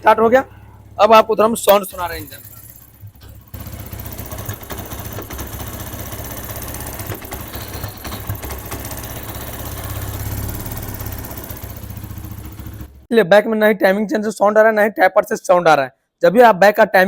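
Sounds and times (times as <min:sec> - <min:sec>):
motorcycle engine idling: 0:00.0 - 0:13.1.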